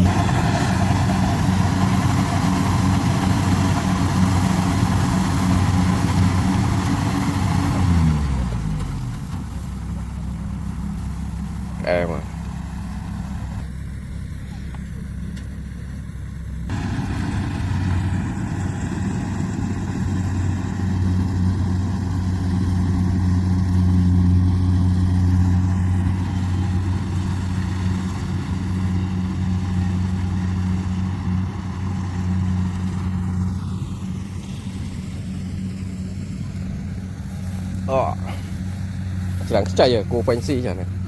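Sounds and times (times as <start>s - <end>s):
combine harvester engine hum: 0.0s - 41.0s.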